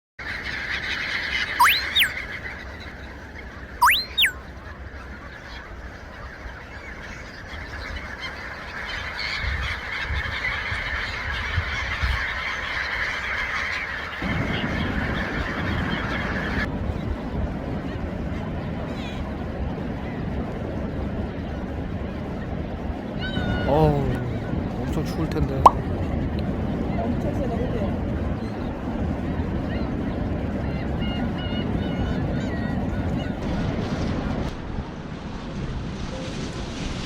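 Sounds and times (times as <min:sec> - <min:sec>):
flock of birds calling: 0:01.6 - 0:02.1
loud rising bird calls: 0:01.6 - 0:02.1, 0:03.8 - 0:04.4.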